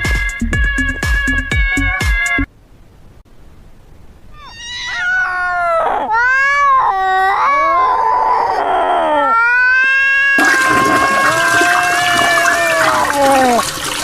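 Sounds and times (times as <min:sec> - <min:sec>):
cat meowing and yowling: 0:04.3 - 0:13.8.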